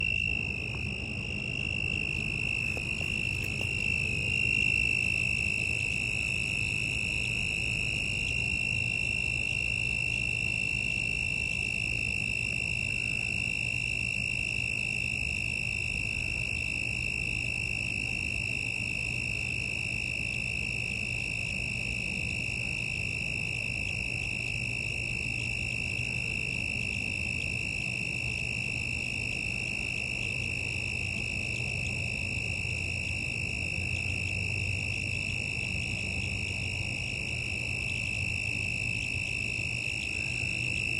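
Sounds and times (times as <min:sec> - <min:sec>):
toads trilling: 0:00.0 - 0:10.8, 0:29.5 - 0:40.9
low steady hum: 0:00.0 - 0:13.8, 0:25.7 - 0:40.9.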